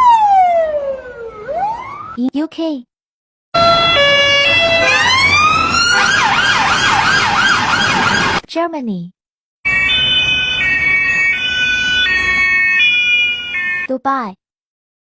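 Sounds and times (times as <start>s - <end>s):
police car siren: 0.0s - 2.2s, 3.6s - 8.4s, 9.7s - 13.9s.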